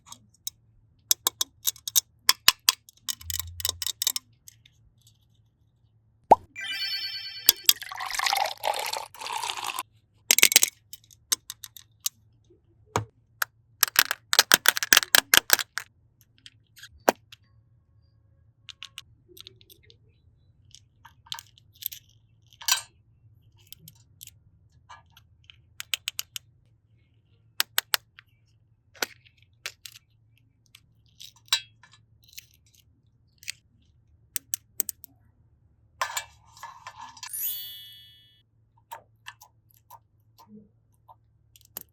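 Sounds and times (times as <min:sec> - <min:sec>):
sharp clicks of small objects: 0:13.8 - 0:15.9.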